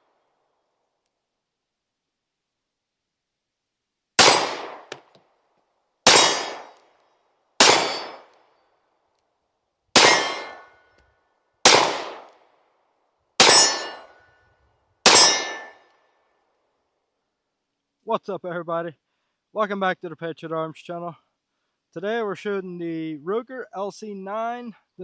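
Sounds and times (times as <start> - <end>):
sharp ringing bangs: 4.2 - 5.0, 6.1 - 6.8, 7.6 - 8.3, 10.0 - 10.9, 11.7 - 12.3, 13.4 - 14.3, 15.1 - 15.9.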